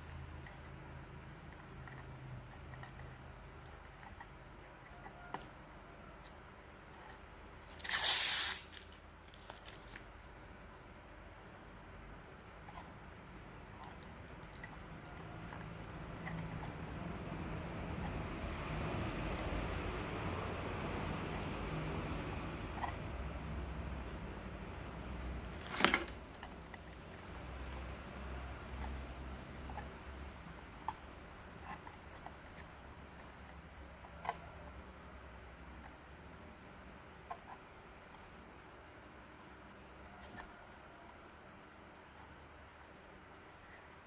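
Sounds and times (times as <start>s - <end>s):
low steady hum: 0.0s - 44.0s
packaging tearing: 7.6s - 10.0s
rustling and handling clicks: 25.2s - 26.9s.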